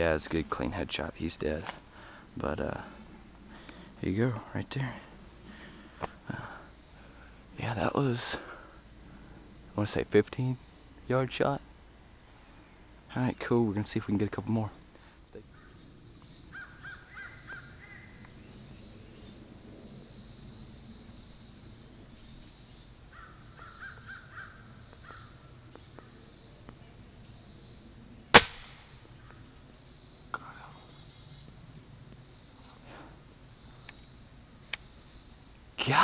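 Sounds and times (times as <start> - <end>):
bird calling: 15.4 - 19.3, 22.1 - 26.6
air rifle shot: 28.3 - 29.0
small click: 34.7 - 34.9.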